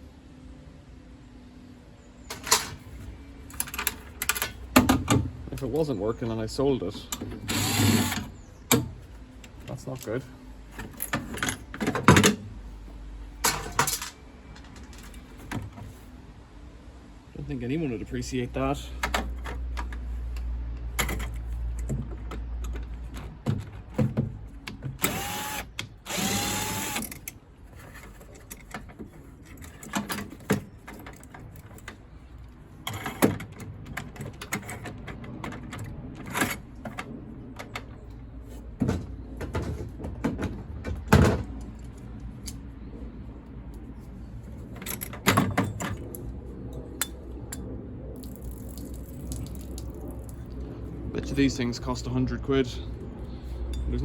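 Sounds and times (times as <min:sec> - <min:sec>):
tools and metal parts clicking: 0:03.5 - 0:04.6, 0:13.4 - 0:15.4, 0:24.7 - 0:32.0, 0:44.6 - 0:47.7
cordless drill spinning: 0:07.5 - 0:08.2, 0:25.0 - 0:27.1.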